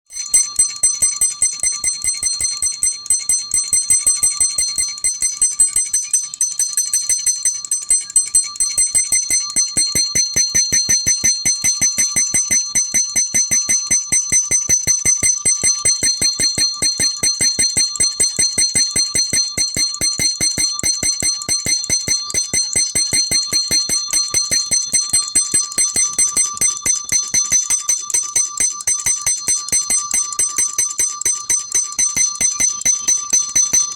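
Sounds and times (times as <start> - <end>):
alarm clock bell ringing: 0.1 - 33.9.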